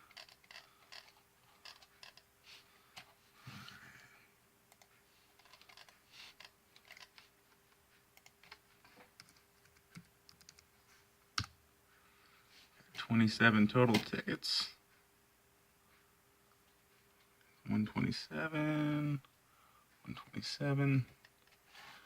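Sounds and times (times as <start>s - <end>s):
computer keyboard typing: 0.0s - 2.2s, 4.7s - 7.2s, 9.2s - 10.7s
faint steady hum: 0.0s - 22.0s.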